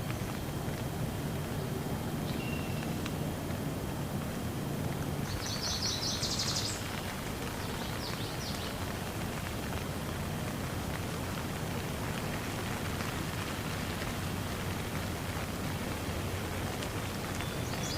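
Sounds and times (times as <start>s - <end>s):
steady rushing noise: 0.0s - 17.9s
songbird trilling: 2.2s - 3.0s, 5.3s - 6.9s.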